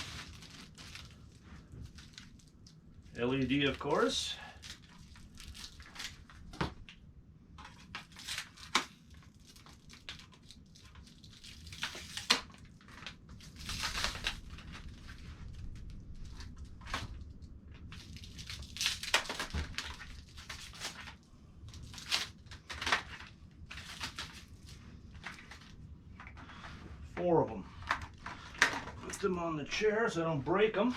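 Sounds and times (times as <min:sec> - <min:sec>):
packaging crinkling and tearing: 0:00.0 - 0:07.0, 0:07.6 - 0:26.4.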